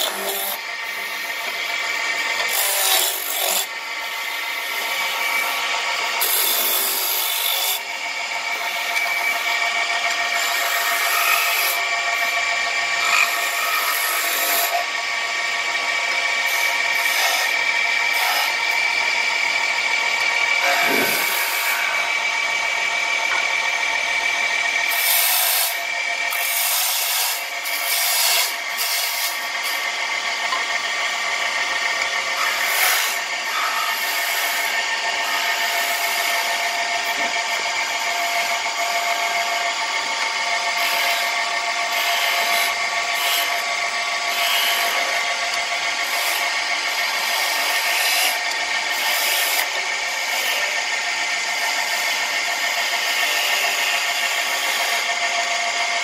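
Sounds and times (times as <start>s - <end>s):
cutter scraping into wood: 0.0s - 3.7s, 20.1s - 22.0s, 31.9s - 34.8s
woodworking power tool motor hum: 0.0s - 56.0s.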